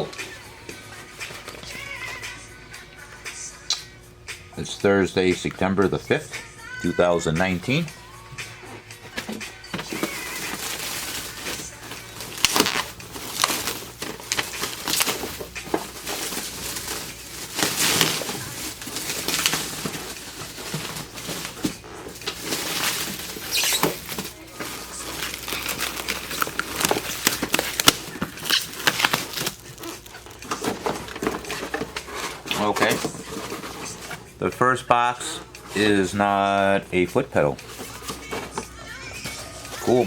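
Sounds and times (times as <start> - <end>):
cardboard box rustling: 9.1 - 34.3, 37.6 - 38.8.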